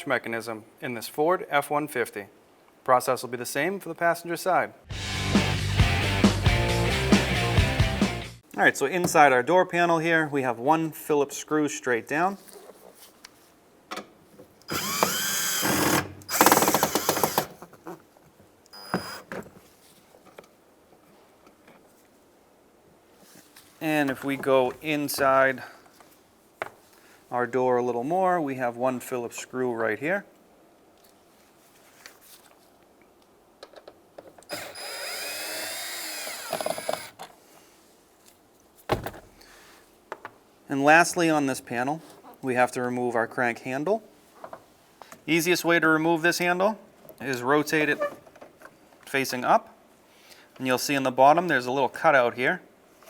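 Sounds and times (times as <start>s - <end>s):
cordless drill motor whine: 14.7s - 17.5s, 34.5s - 37.2s
power driver running: 14.7s - 17.5s, 34.5s - 37.1s.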